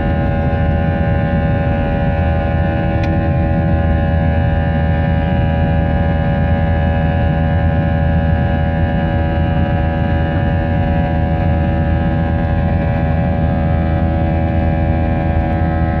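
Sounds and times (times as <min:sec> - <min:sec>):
jet engine drone in cabin: 0:00.0 - 0:16.0.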